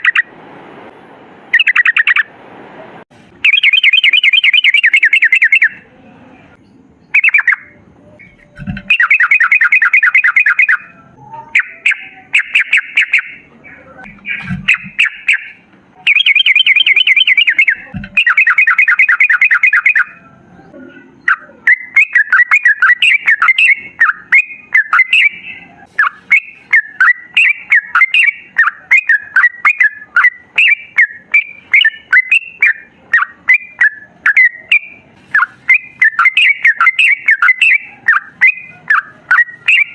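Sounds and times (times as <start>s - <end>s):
bird singing rolling trills: 1.5s - 2.3s, 3.4s - 39.9s
short bubbling bird chirps: 14.0s - 20.0s
low thuds: 14.1s - 15.9s.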